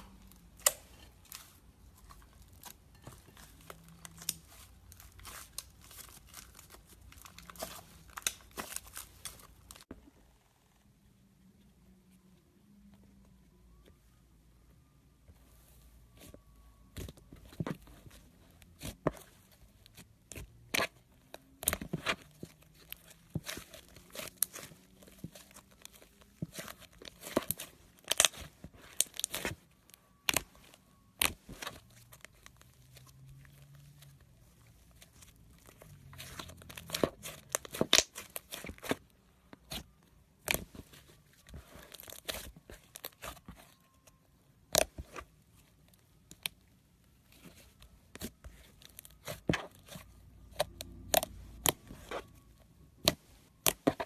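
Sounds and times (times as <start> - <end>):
slime squishing crackles and pops: 21.6 - 32.8, 35.0 - 45.3.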